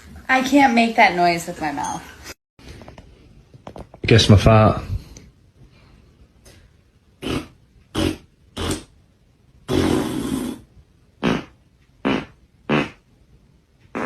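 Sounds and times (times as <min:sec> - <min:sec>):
farts: 0:07.2 - 0:08.9, 0:09.7 - 0:13.0.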